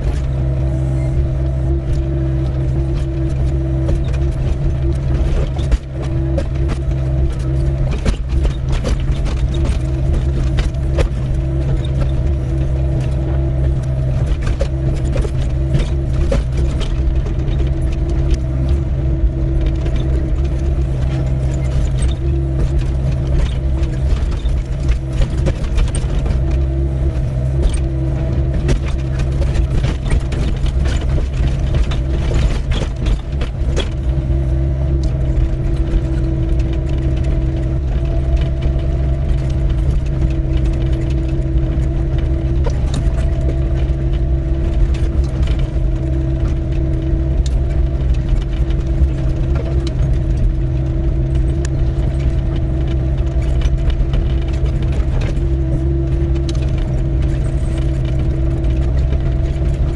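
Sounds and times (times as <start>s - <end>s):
excavator diesel engine droning: 0.0s - 59.9s
clicks and knocks on stony ground: 1.4s - 59.9s.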